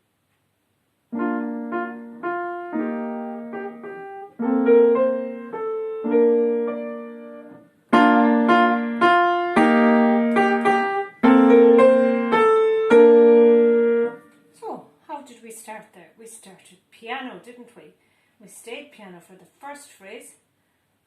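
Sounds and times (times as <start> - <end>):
piano melody: 1.1 - 14.3.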